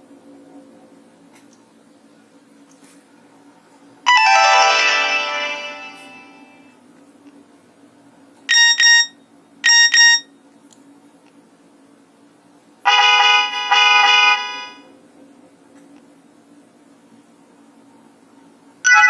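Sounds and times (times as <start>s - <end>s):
high phone double-beeps: 8.5s - 10.3s.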